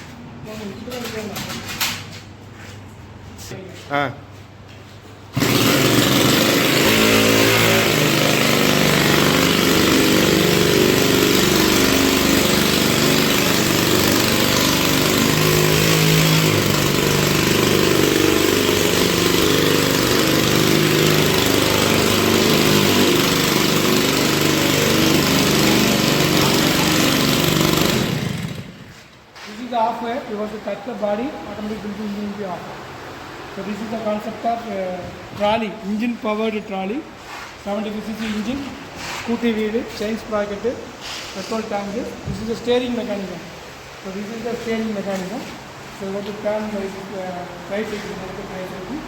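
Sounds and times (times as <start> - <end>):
small two-stroke engine running: 5.3 - 28.8.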